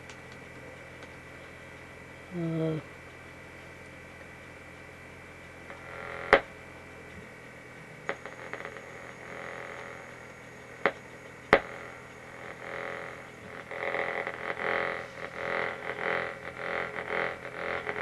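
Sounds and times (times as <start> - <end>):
sharp clicks: 0.0 - 1.2, 5.4 - 18.0
low steady hum: 0.0 - 18.0.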